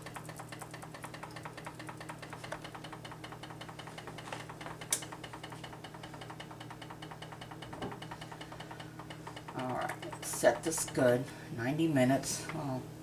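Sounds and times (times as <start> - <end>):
cooking timer ticking: 0.0 - 11.2.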